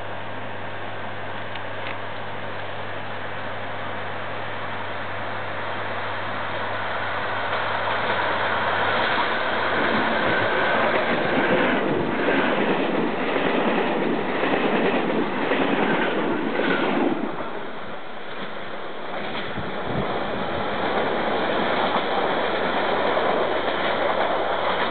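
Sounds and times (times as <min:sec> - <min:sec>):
train wheels clattering over rail joints: 0:08.0 - 0:24.9.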